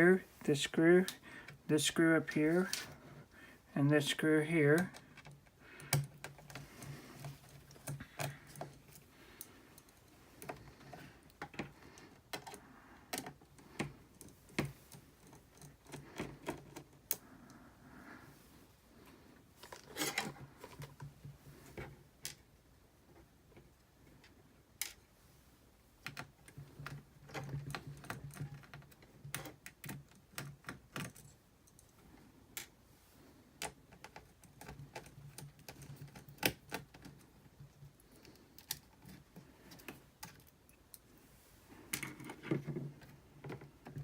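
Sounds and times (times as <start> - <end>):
clicks and taps of small parts: 4.8 - 17.2, 26.0 - 32.8, 33.6 - 41.0.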